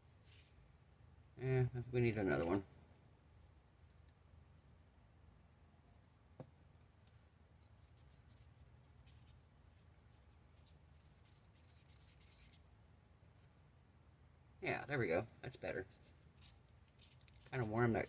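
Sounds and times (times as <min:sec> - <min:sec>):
stir stick scraping a cup: 0:15.9 - 0:18.0.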